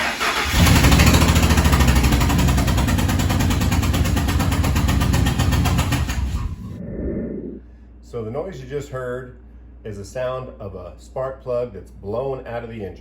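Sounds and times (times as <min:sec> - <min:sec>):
engine running with rapid chuffing: 0:00.0 - 0:06.8.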